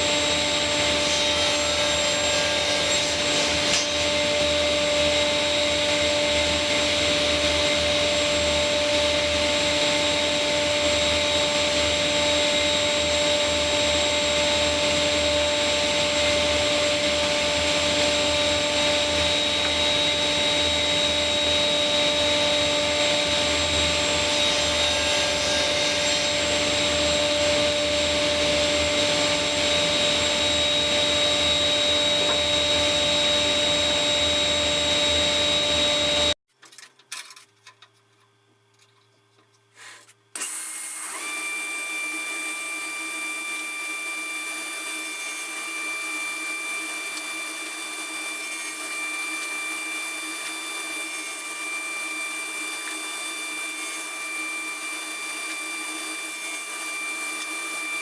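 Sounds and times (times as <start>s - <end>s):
machine running with a whine: 0.0s - 36.4s
machine with higher whine: 0.0s - 36.4s.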